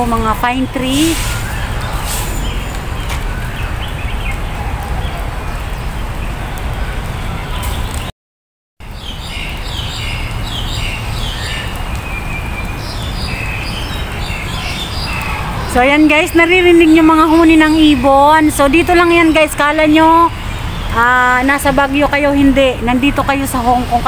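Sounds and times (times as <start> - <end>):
steady low rumble: 0.0 - 7.3
birds chirping: 0.0 - 8.1, 8.8 - 24.0.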